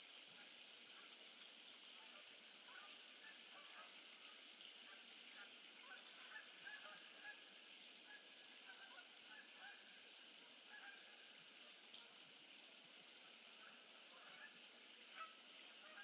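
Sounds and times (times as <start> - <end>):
geese honking: 13.6 - 16.0.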